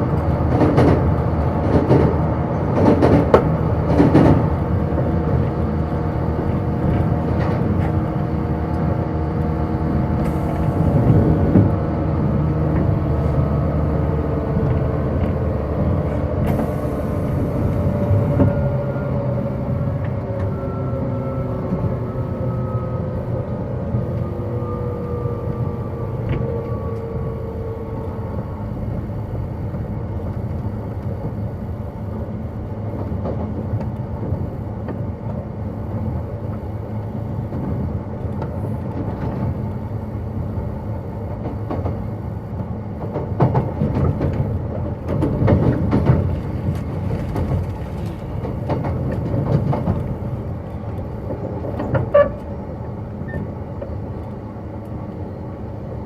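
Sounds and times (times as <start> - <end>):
rail-joint clatter: 0.0 - 5.7, 6.3 - 13.7, 14.5 - 20.6, 32.7 - 39.8, 41.1 - 55.2
train wheels rumbling on rail: 0.0 - 56.0.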